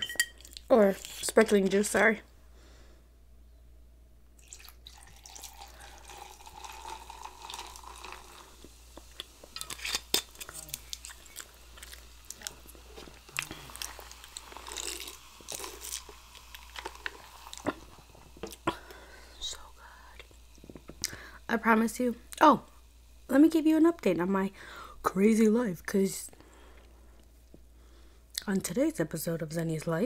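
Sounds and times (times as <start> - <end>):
juice poured into a glass: 4.4 - 18.6
chewing and mouth sounds: 4.4 - 18.8.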